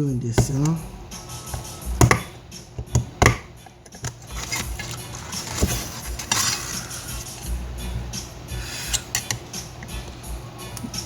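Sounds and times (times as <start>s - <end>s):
tools knocking and clinking: 1.5s - 6.5s.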